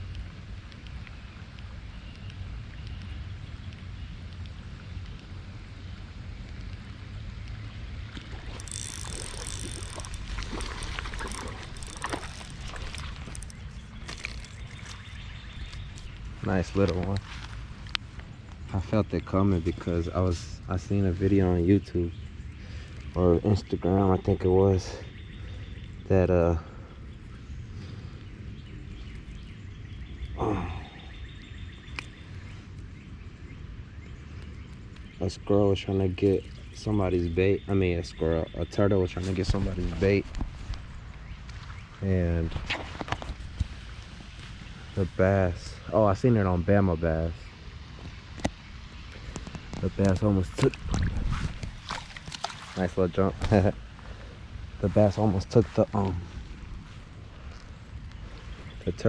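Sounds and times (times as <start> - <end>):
wind rumbling on microphone: 0.0 - 26.1, 26.8 - 59.0
short clicks and crackles: 8.2 - 18.0
faint bird chirps: 21.4 - 40.2.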